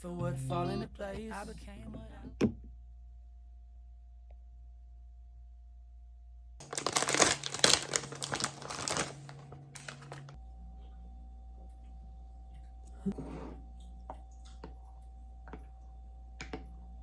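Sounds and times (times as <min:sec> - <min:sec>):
packaging crinkling: 0:06.6 - 0:10.4.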